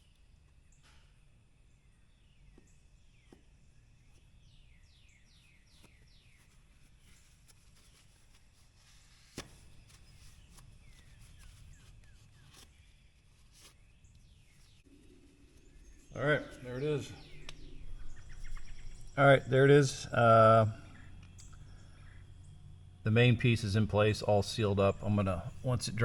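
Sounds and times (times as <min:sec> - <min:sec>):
birds chirping: 0:00.0 - 0:08.2, 0:09.6 - 0:26.0.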